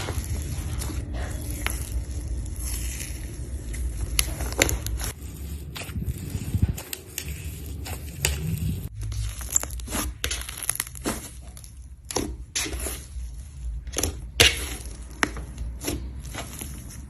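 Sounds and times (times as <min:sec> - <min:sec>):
slime crackling as squeezed: 0:07.8 - 0:13.1.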